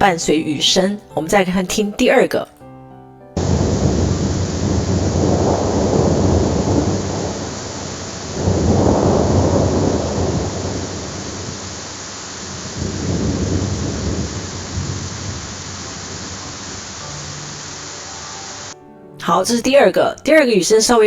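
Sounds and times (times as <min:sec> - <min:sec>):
rain downpour: 0:03.4 - 0:18.8
thunder rolling: 0:03.4 - 0:18.8.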